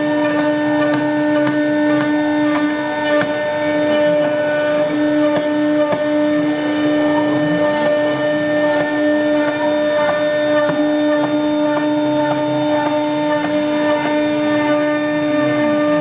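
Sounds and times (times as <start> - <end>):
cnc router spindle whine: 0.0 - 16.0.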